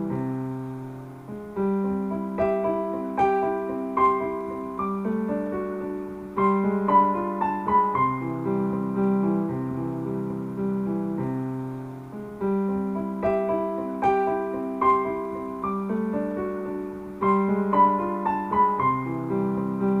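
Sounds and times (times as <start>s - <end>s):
gentle piano music: 0.0s - 20.0s.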